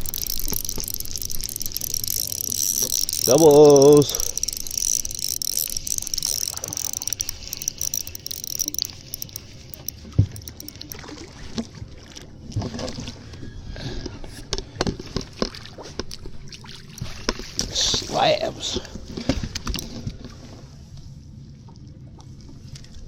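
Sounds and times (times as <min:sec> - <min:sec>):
fishing gear knocking and rattling: 0:00.0 - 0:11.1, 0:19.1 - 0:20.1.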